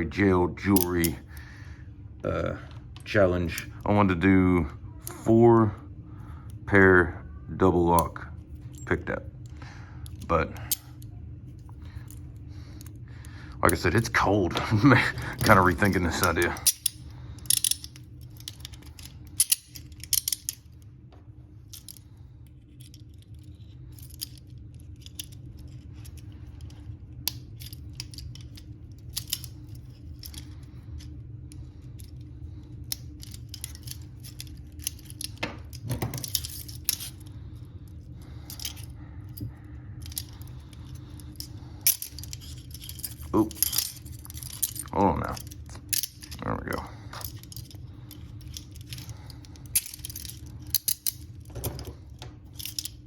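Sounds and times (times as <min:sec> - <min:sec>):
steady low rumble: 0:00.0 - 0:53.0
handcuffs clicking and jingling: 0:10.0 - 0:13.0, 0:13.7 - 0:20.8, 0:21.6 - 0:31.2, 0:32.8 - 0:37.3, 0:38.0 - 0:53.0.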